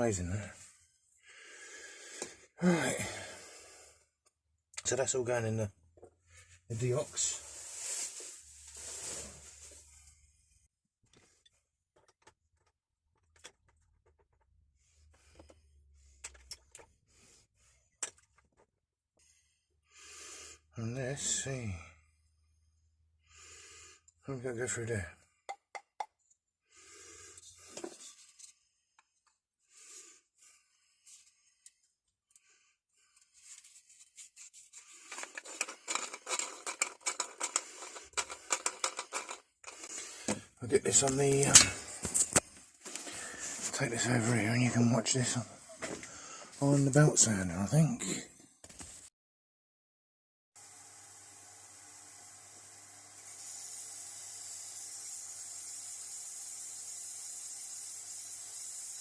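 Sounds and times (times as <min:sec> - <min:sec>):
scratchy scraping by hand: 0:06.8 - 0:09.9, 0:33.3 - 0:42.4
small metal parts clicking: 0:35.2 - 0:39.9.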